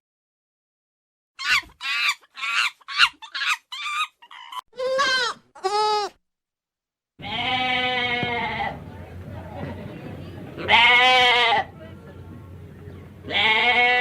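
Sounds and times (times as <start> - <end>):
farm animal bleating: 4.8 - 6.1, 7.2 - 8.9, 10.6 - 11.8, 13.2 - 14.0.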